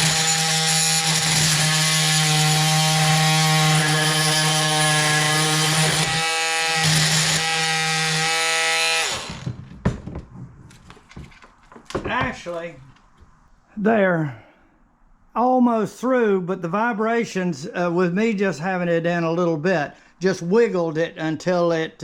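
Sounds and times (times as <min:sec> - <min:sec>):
oscillating multi-tool buzzing: 0:00.0 - 0:09.5.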